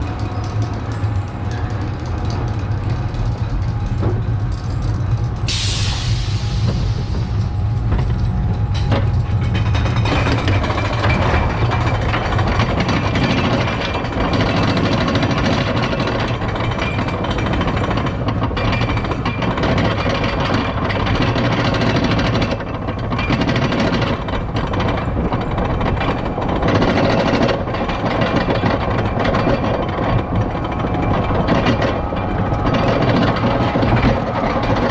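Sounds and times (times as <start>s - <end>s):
ride rumble and rushing: 0.0s - 34.9s
compressed-air hiss: 5.5s - 7.5s.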